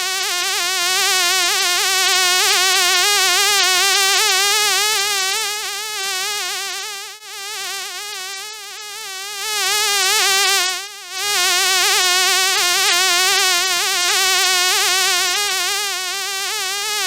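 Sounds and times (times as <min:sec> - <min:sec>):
house fly buzzing: 0:04.2 - 0:17.0.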